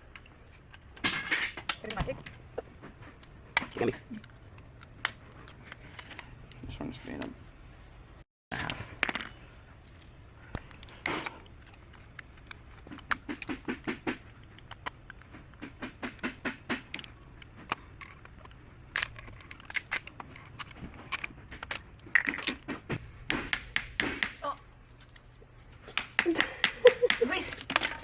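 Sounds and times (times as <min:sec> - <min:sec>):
metal tools clinking and scraping: 0:27.3 - 0:28.0.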